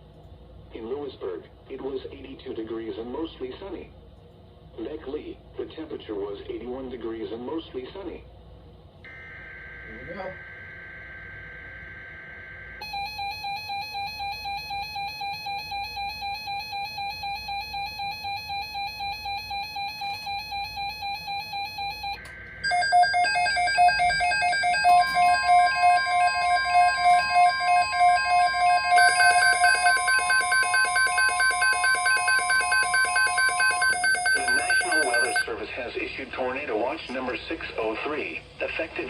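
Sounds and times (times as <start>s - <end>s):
screechy data burst: 9.1s - 13.0s, 23.6s - 35.4s
steady alert tone: 9.1s - 35.4s
electronic alarm beeping: 9.1s - 35.5s.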